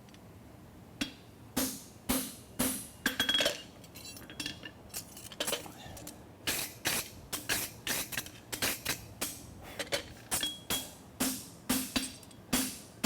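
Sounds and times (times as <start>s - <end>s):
hammer striking metal on anvil: 10.3s - 12.9s.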